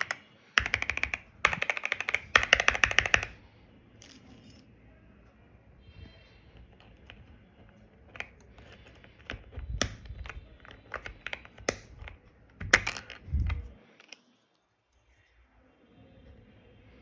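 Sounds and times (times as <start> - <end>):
mechanical keyboard typing: 0.0 - 3.4, 8.1 - 13.6.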